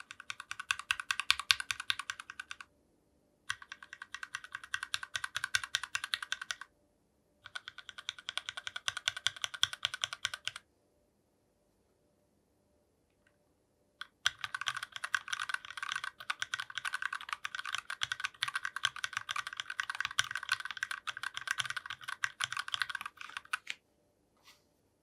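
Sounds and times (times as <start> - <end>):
typing on mechanical keyboard: 0.0 - 2.7, 3.5 - 6.7, 7.4 - 10.6, 14.0 - 23.8.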